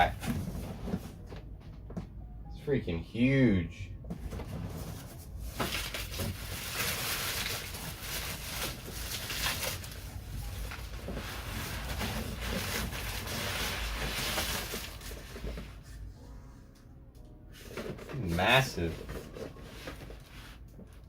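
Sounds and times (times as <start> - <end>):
cardboard rustling and scraping: 0.0 - 1.5, 4.2 - 16.0, 17.6 - 21.0.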